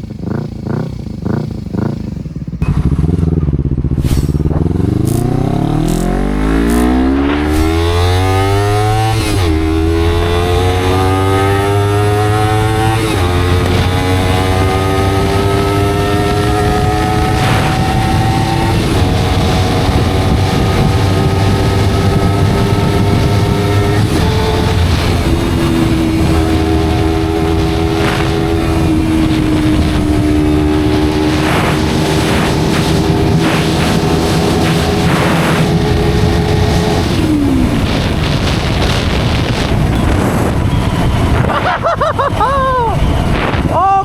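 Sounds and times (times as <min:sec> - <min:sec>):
low rumble: 0:00.0 - 0:11.7
motorcycle engine shifting up: 0:00.0 - 0:42.4.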